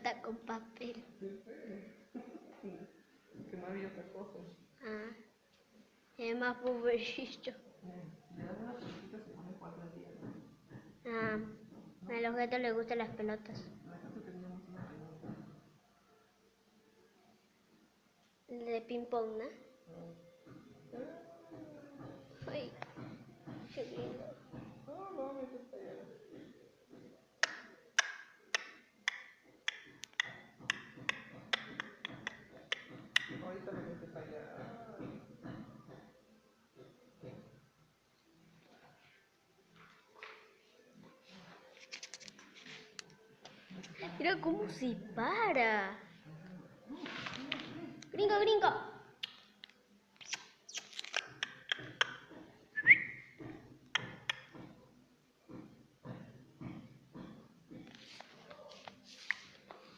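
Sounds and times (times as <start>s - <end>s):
light taps and knocks: 21.5s - 24.8s, 55.5s - 58.0s
small ball tapping on hard floor: 28.0s - 33.5s
whistle-like chirp: 52.8s - 53.4s.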